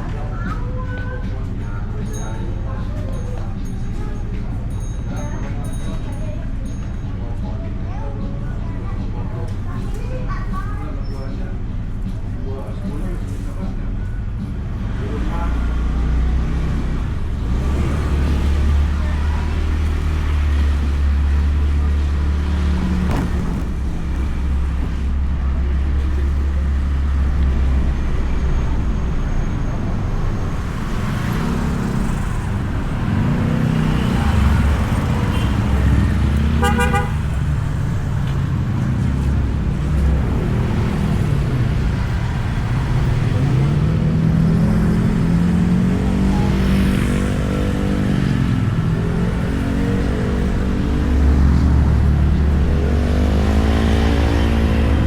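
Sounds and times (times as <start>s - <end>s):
scooter engine: 29.5s - 55.0s
horn beeping: 35.0s - 37.6s.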